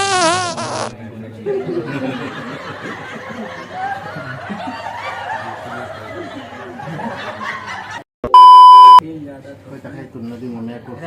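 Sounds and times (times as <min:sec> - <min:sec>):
loud steady high beep: 0:08.3 - 0:09.0.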